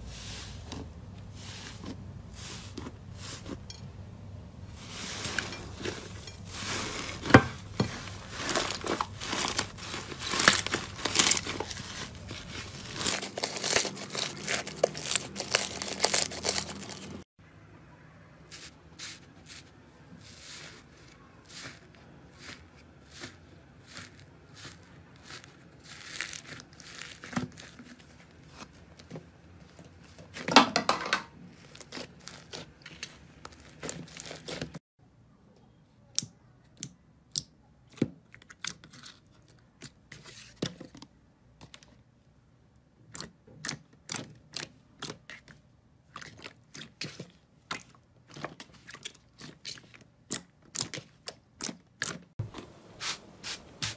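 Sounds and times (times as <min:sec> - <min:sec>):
slime crackling and popping: 0:08.2 - 0:17.2.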